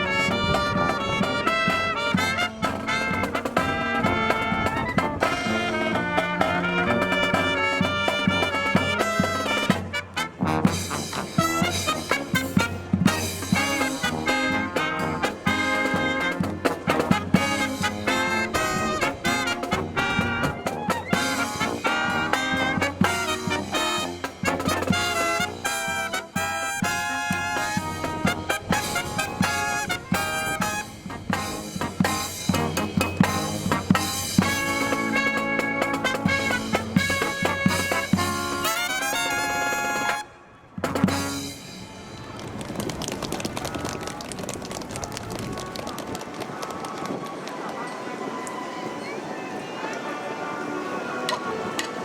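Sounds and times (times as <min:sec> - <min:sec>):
wind rumble on microphone: 0:00.0 - 0:02.1, 0:42.1 - 0:49.6
marching brass band playing: 0:00.0 - 0:42.4.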